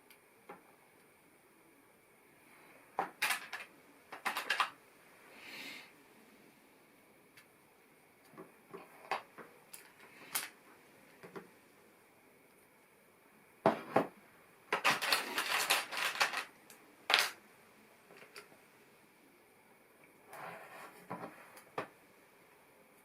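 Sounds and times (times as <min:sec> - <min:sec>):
plastic toy bricks clicking: 0:03.2 - 0:04.8, 0:14.8 - 0:16.5.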